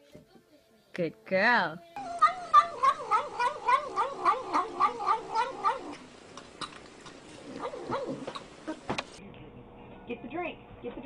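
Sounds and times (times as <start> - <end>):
cat yowling: 2.0 - 6.0.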